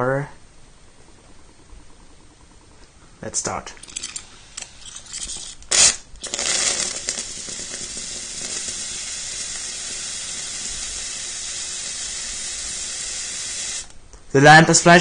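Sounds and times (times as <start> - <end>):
hiss of hot water and steam: 6.2 - 13.9.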